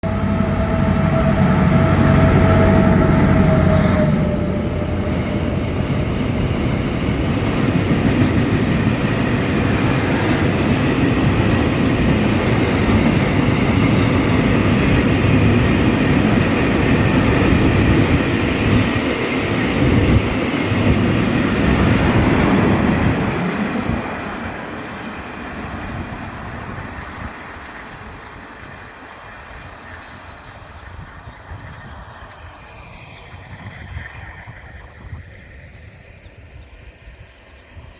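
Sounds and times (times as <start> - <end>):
steady tone: 0.0 - 6.7
diesel locomotive engine throbbing: 0.0 - 28.7.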